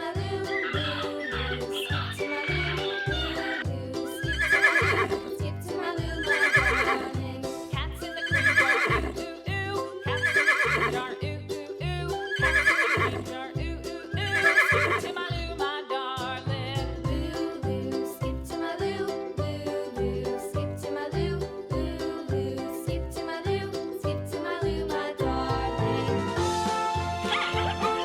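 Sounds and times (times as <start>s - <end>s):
children's music with steady beat: 0.0s - 28.0s
horse whinnying: 0.5s - 3.6s, 4.2s - 5.2s, 6.2s - 7.1s, 8.1s - 9.2s, 10.0s - 11.0s, 12.2s - 13.3s, 14.3s - 15.1s.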